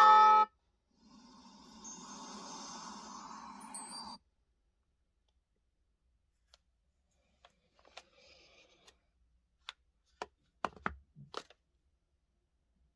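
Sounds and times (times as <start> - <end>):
smartphone clicks and taps: 10.2 - 11.5.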